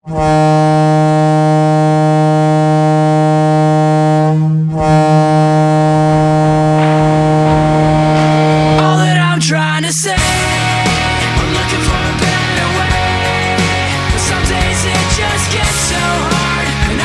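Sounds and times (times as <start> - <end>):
arena goal horn blast: 0.0 - 9.4.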